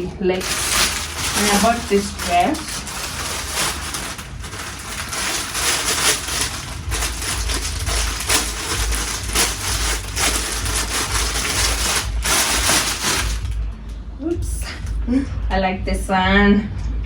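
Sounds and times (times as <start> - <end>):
bag crinkling and rustling: 0.2 - 13.6.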